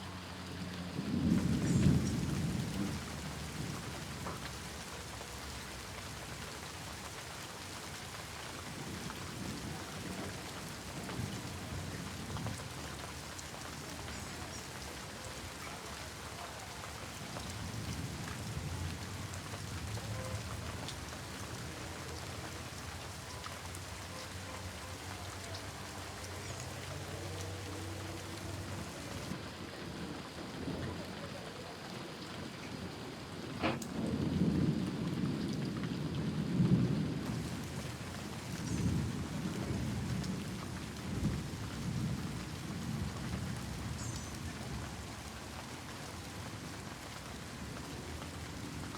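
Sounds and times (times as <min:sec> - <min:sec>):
heavy rain falling: 0:00.0 - 0:48.9
thunder rumbling: 0:01.0 - 0:04.4, 0:33.6 - 0:44.0.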